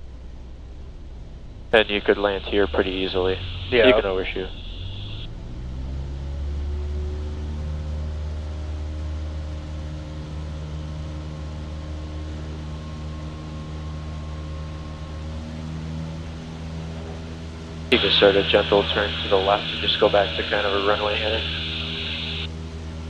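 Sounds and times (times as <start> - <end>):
light aircraft engine droning: 0.0 - 23.0.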